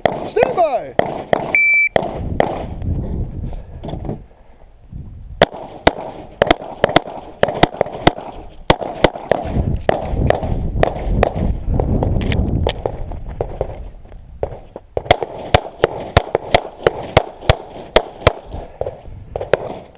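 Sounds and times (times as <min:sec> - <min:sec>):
pistol shots: 0:00.0 - 0:02.8, 0:05.4 - 0:11.4, 0:15.0 - 0:19.9.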